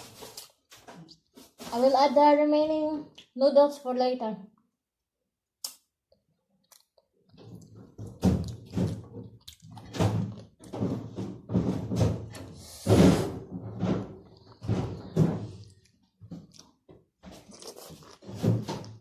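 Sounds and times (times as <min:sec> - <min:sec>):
chewing and crunching food: 0:05.6 - 0:11.0, 0:14.3 - 0:19.0.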